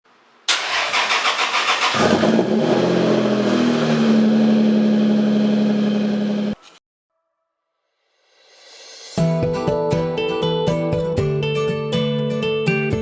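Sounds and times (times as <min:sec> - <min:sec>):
starter motor cranking: 0:00.5 - 0:02.3.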